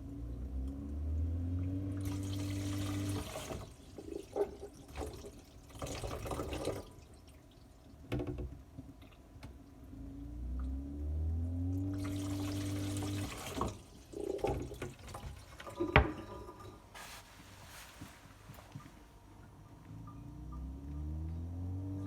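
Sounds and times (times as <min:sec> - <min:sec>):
low steady hum: 0:00.0 - 0:22.0
water running: 0:01.8 - 0:08.0, 0:11.8 - 0:19.6.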